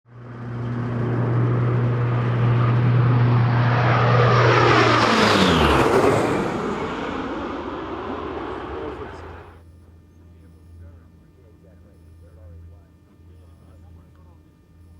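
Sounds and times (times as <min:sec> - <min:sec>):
propeller aircraft flying past: 0:00.1 - 0:09.6.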